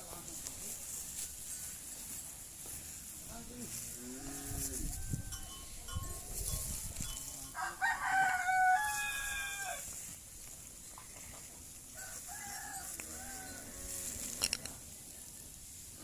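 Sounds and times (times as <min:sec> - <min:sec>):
faint rooster calls: 0:07.5 - 0:10.0, 0:11.9 - 0:14.4
rooster crowing: 0:07.6 - 0:09.9, 0:12.0 - 0:14.1.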